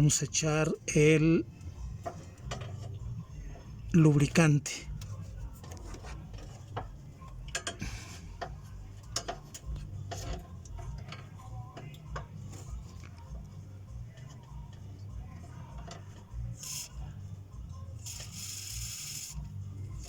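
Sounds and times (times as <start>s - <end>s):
light clicks and knocks of handling: 8.4s - 13.4s
spray can hiss: 18.0s - 19.4s.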